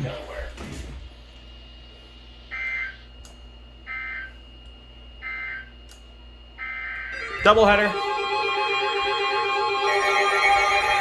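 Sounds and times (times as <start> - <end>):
warbling data tone bursts: 6.6 - 11.0.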